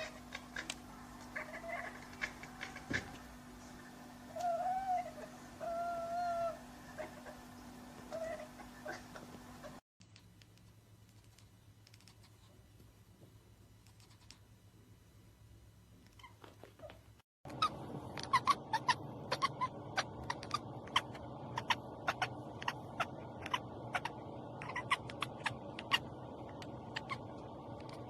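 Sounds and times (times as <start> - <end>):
cat chattering: 0.0 - 0.8, 1.4 - 3.0, 8.1 - 9.8, 17.5 - 28.0.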